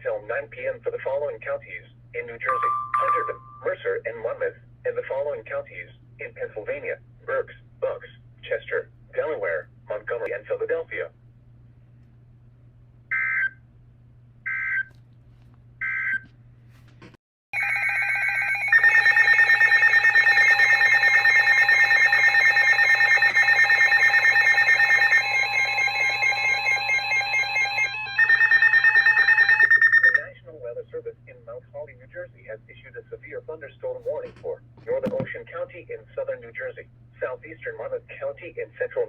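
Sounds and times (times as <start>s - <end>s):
long electronic alert tone: 2.5s - 3.8s, 17.6s - 30.2s.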